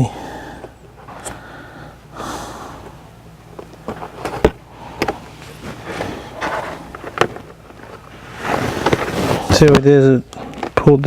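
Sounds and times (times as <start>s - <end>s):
plastic trim rustling and scraping: 3.6s - 10.9s.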